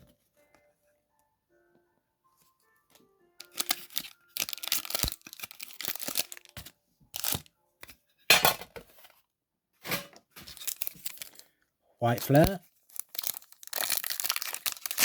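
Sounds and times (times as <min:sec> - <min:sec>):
plastic wrap tearing and crinkling: 0:03.4 - 0:07.5, 0:10.4 - 0:11.4, 0:12.0 - 0:15.0.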